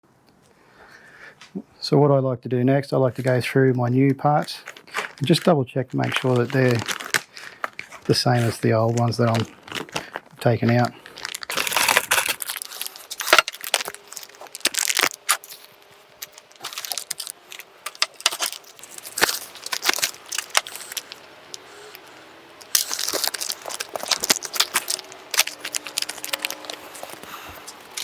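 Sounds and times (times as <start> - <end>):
plastic packaging crinkling: 3.2 - 28.0
metal parts clinking: 11.3 - 28.0.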